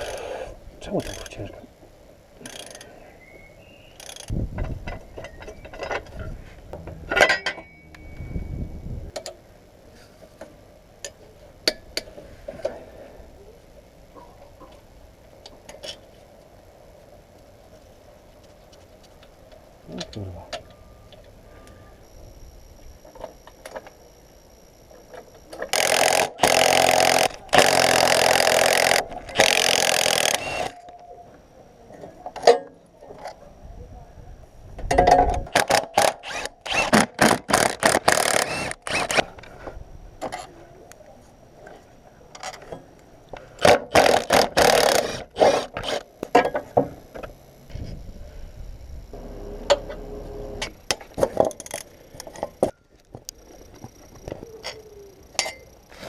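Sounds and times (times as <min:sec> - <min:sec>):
metal tools clinking: 0:07.1 - 0:08.5
loud power tool noise: 0:25.6 - 0:30.8, 0:35.5 - 0:39.3, 0:43.9 - 0:46.1, 0:49.1 - 0:50.7.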